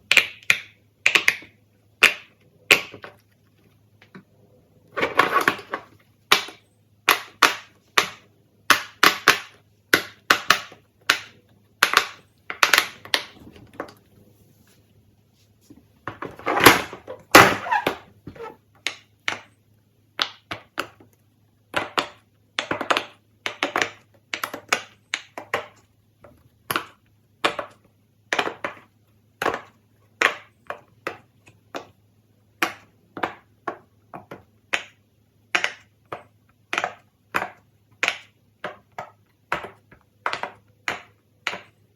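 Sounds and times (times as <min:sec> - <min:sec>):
fidget toys clicking and popping: 0:00.1 - 0:03.1, 0:32.6 - 0:41.8.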